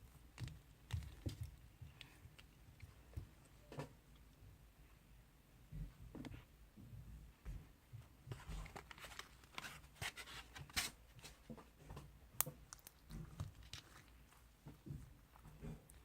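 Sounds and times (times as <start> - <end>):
faint clicks and small pops: 12.4 - 16.0.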